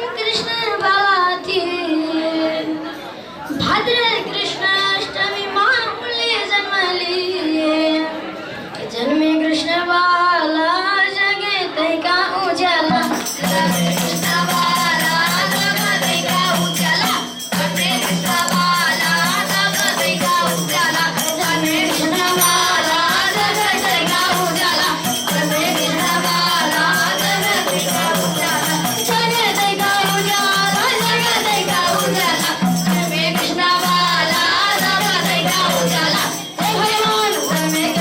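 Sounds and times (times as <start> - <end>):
jingling tambourine percussion: 12.9 - 38.0
children singing: 13.2 - 37.8.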